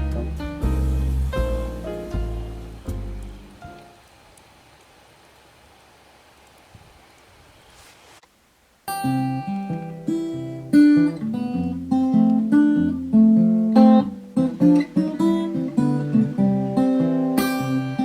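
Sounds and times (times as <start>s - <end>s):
acoustic guitar music: 0.0s - 4.0s, 8.8s - 18.0s.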